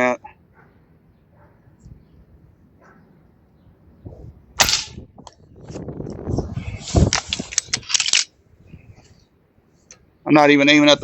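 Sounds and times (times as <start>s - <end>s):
air rifle firing crack: 4.6s - 5.1s.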